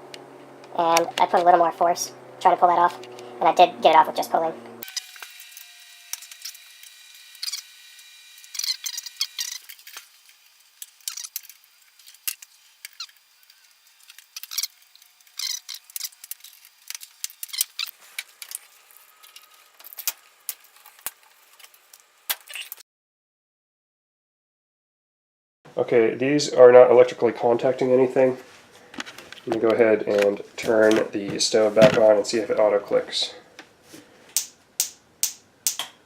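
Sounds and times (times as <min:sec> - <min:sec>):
small parts clicking and scraping: 0:04.8 - 0:07.8, 0:08.4 - 0:22.8.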